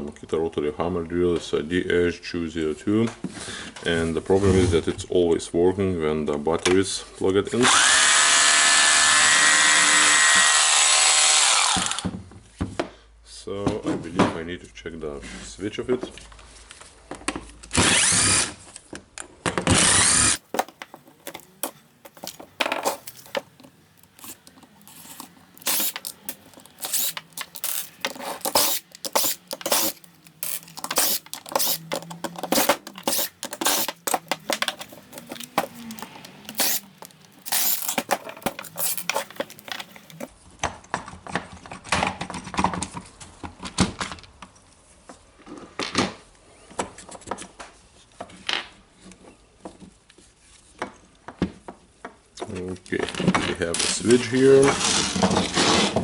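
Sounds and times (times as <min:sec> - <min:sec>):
power tool running: 0:20.4 - 0:40.3.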